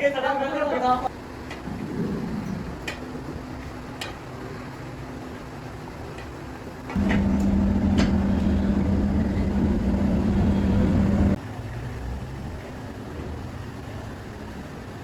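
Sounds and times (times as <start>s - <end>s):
machine humming: 6.9s - 11.4s.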